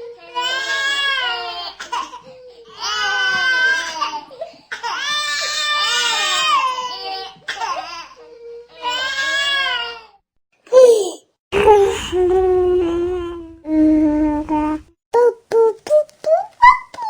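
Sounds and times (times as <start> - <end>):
baby crying: 10.7 - 14.8.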